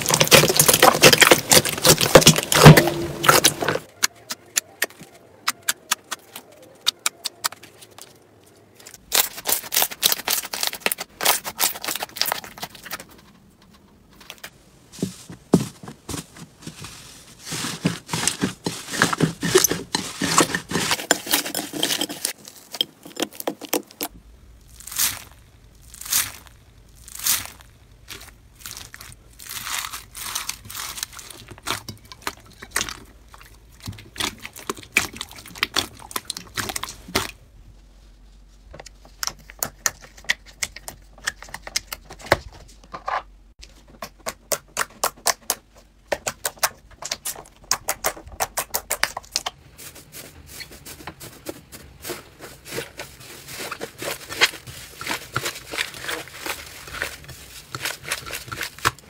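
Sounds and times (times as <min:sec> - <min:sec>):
slime crackling and popping: 0:00.0 - 0:08.0, 0:08.9 - 0:13.0, 0:23.4 - 0:37.4, 0:44.0 - 0:49.6.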